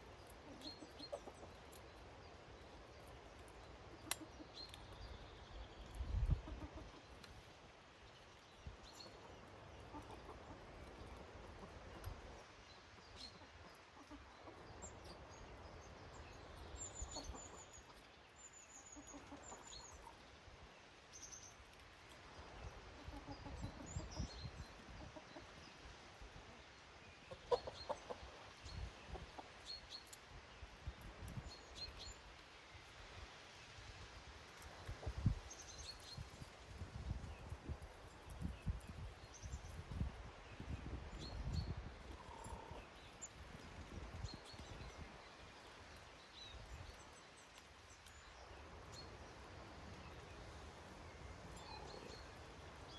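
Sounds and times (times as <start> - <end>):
small birds chirping: 0.0 - 33.3, 34.4 - 52.9
hens clucking: 9.9 - 10.6, 27.3 - 28.4.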